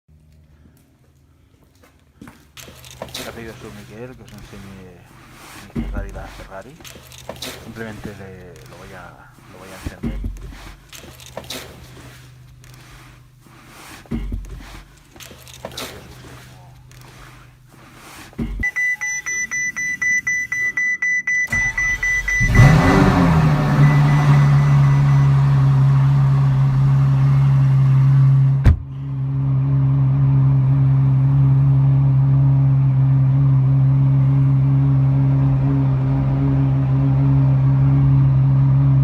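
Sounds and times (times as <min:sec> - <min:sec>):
car engine starting and idling: 0:02.5 - 0:18.7, 0:19.5 - 0:39.0
rapid high beeps: 0:18.6 - 0:23.0, 0:23.6 - 0:25.4.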